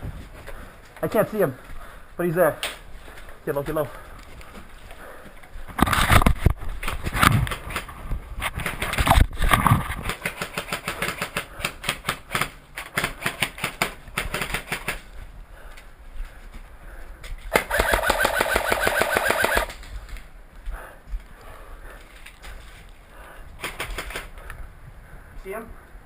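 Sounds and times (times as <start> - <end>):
airsoft gun firing: 17.5 - 19.8
full-auto burst with gearbox cycling: 17.5 - 19.8.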